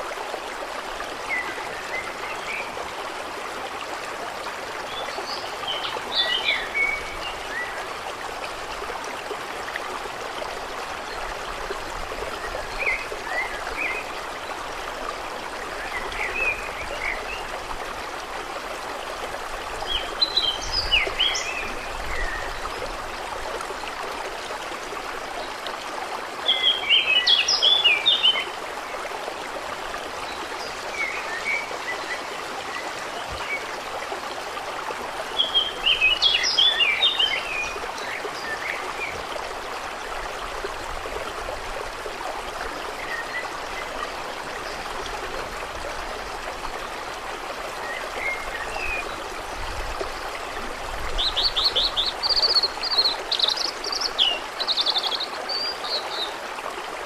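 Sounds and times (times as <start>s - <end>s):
running water: 0.0s - 57.0s.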